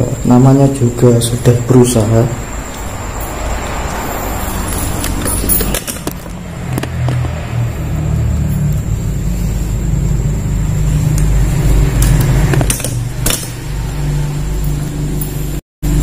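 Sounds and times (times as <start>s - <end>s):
road traffic rumble: 0.0s - 16.0s
sharp clicks or knocks: 5.0s - 7.4s, 12.0s - 13.6s.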